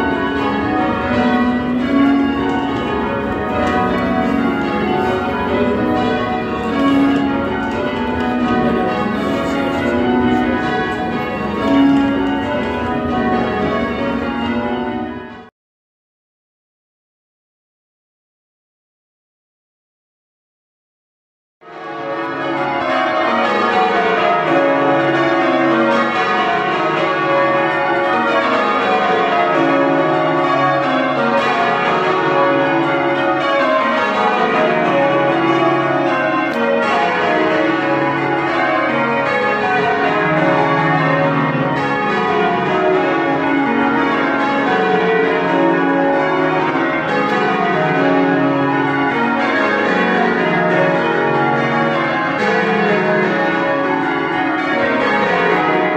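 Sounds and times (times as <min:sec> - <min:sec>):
church bells ringing: 0:00.0 - 0:15.5, 0:21.6 - 0:55.9.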